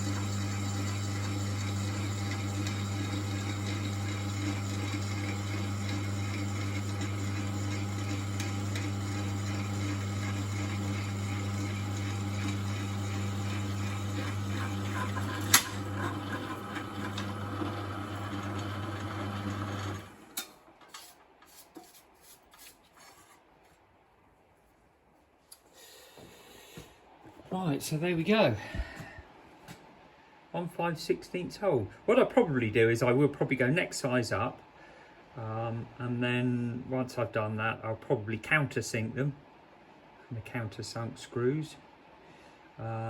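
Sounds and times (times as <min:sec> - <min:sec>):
electric drill boring metal: 0:00.0 - 0:20.4.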